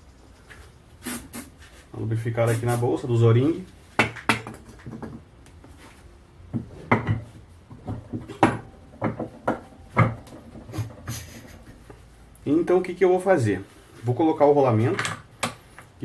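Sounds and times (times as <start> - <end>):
brief air hiss: 1.0 - 1.8.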